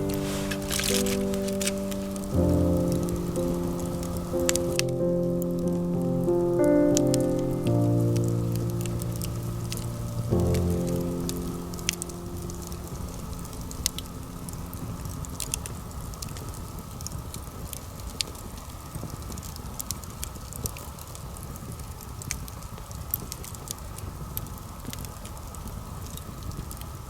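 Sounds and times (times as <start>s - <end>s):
campfire crackling and popping: 0.0s - 6.0s, 6.6s - 18.4s.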